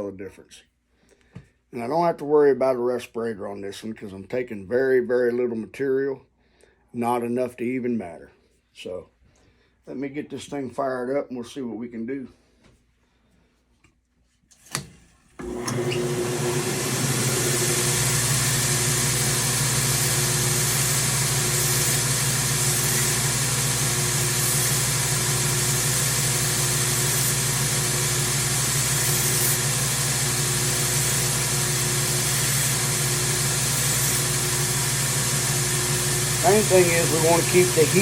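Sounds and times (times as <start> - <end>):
knife grinder whirring: 15.4 - 38.0.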